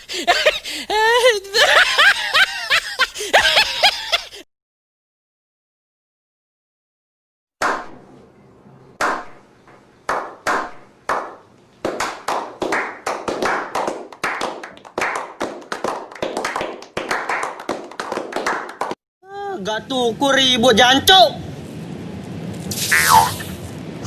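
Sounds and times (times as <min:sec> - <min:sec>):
hand claps: 0:10.1 - 0:19.0.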